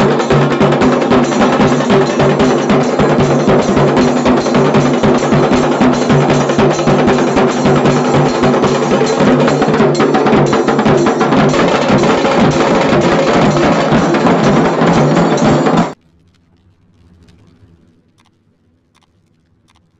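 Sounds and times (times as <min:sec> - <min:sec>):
drums in fast rhythm: 0:00.0 - 0:16.0.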